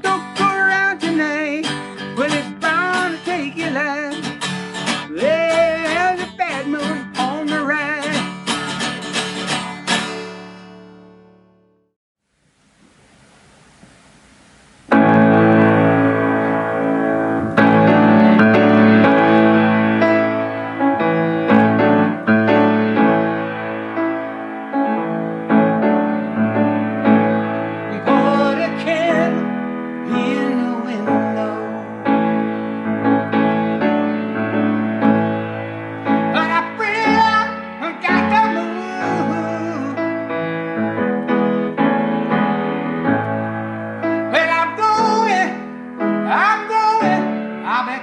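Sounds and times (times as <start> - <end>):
faint hiss: 12.2 - 22.0
keyboard music with piano chords: 14.9 - 48.0.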